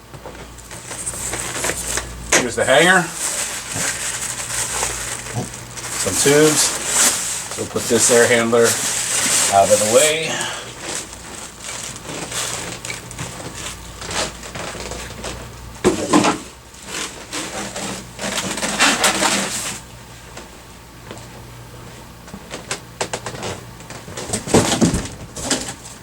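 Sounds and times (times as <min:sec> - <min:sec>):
packaging being handled: 0:00.3 - 0:15.4.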